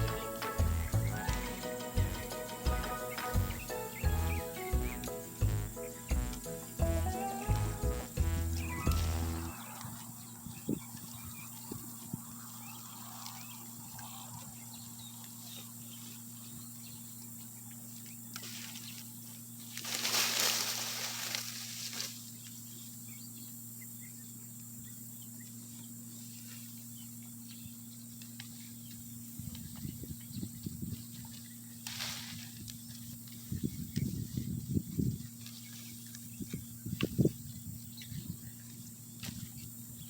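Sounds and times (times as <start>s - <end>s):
low steady hum: 0.0s - 40.0s
goats chewing leaves and twigs: 8.6s - 22.8s, 28.1s - 39.7s
branches rustling: 18.0s - 22.8s, 31.1s - 36.7s.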